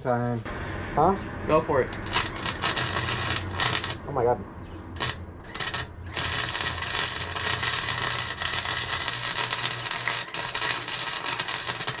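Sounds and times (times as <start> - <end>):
low electrical hum: 0.0 - 12.0
arc welder crackling hiss: 2.0 - 4.0, 5.0 - 12.0.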